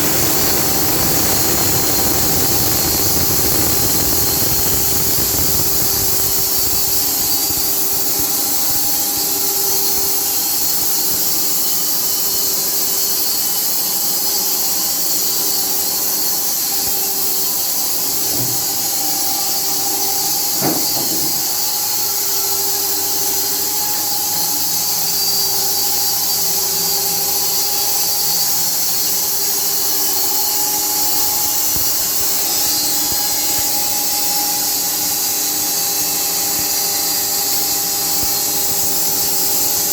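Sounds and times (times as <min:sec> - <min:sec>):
machine hum: 0:00.0 - 0:08.9.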